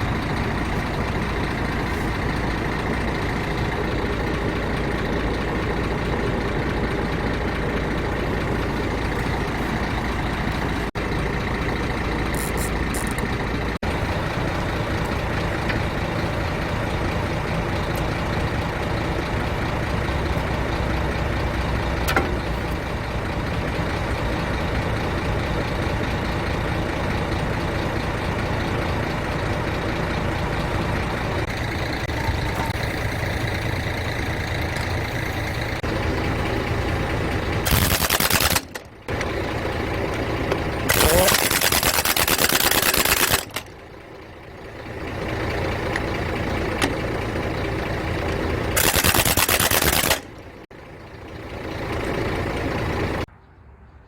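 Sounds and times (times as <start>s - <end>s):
dump truck diesel engine running: 0.0s - 53.3s
sharp click: 48.8s - 50.2s.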